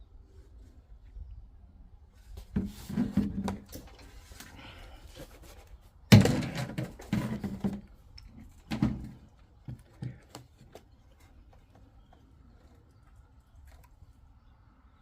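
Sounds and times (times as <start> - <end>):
loud thunk: 6.1 - 7.6.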